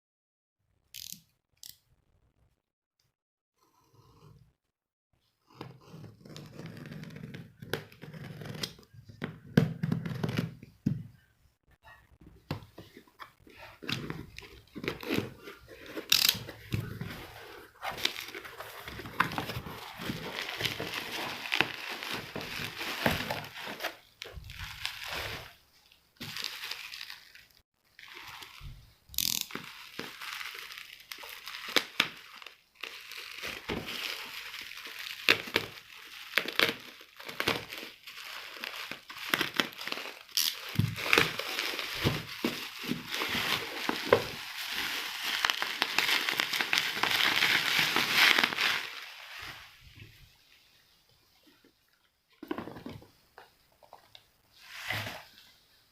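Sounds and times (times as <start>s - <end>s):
packaging crinkling and rustling: 12.8s - 28.8s, 29.5s - 50.0s.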